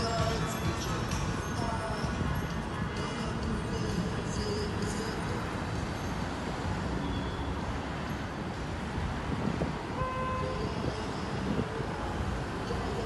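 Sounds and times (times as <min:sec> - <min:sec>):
street traffic rumbling: 0:00.0 - 0:13.0
car horn: 0:09.9 - 0:10.9.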